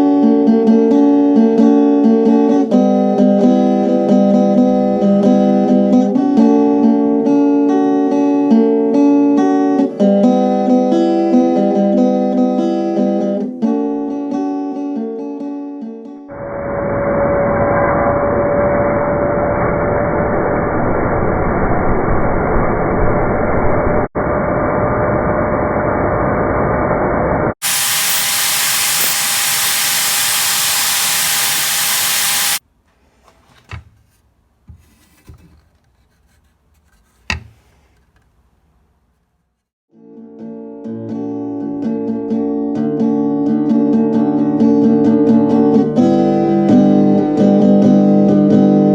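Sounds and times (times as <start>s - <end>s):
woodworking power tool whining: 27.6s - 32.6s.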